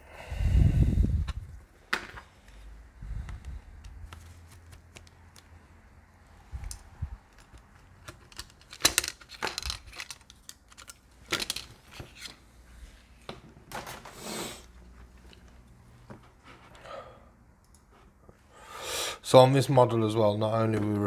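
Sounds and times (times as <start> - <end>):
tools clicking and tapping: 6.6 - 12.0.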